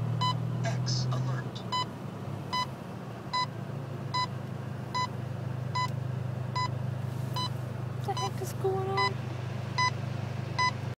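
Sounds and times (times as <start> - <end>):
short electronic beeps: 2.5 - 2.7, 6.6 - 6.8, 8.2 - 8.4, 9.8 - 10.0, 10.6 - 10.8.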